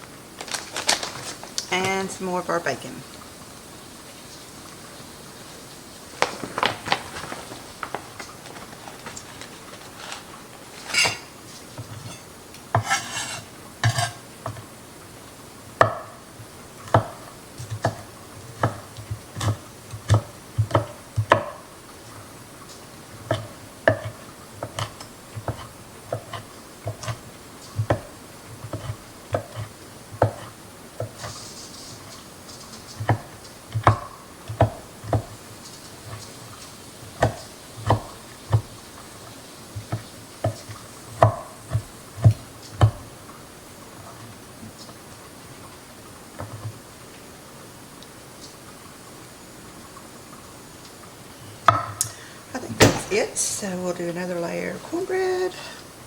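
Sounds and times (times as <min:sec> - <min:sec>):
utensil tapping and scraping dish: 0:10.8 - 0:14.6, 0:23.3 - 0:27.2.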